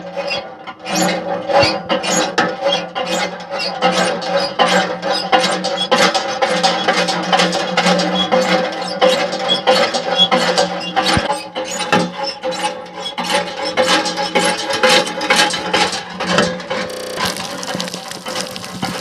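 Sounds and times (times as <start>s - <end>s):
steady ringing tone: 16.8s - 17.4s.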